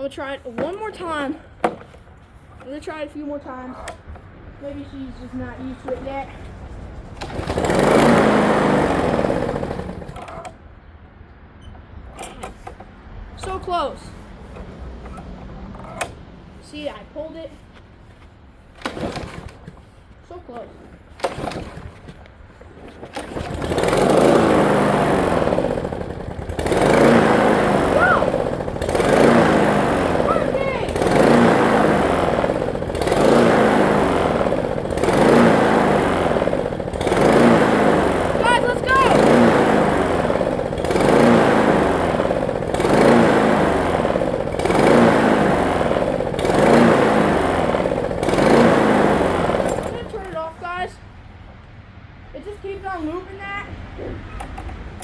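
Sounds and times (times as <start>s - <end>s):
lawn mower engine running: 3.8s - 10.7s, 18.7s - 50.8s.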